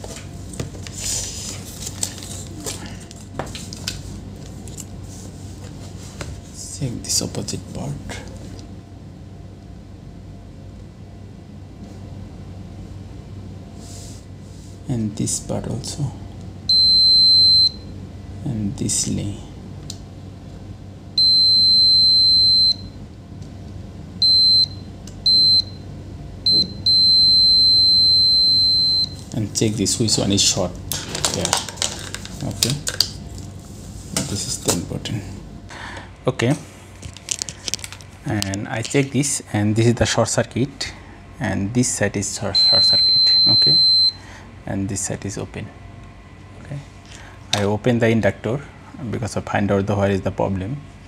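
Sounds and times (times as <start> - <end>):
steady low hum: 0.0 - 51.0
multimeter continuity beeps: 16.7 - 17.9, 21.2 - 23.0, 24.2 - 25.8, 26.4 - 29.2, 42.6 - 44.2.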